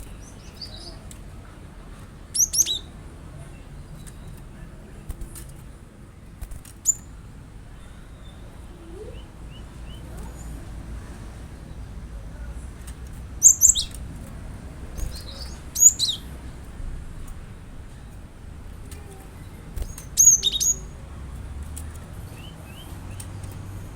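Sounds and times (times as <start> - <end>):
bird chirping: 0.0 - 1.0, 2.3 - 2.9, 6.8 - 10.6, 13.2 - 16.6, 19.0 - 21.3, 21.9 - 23.9.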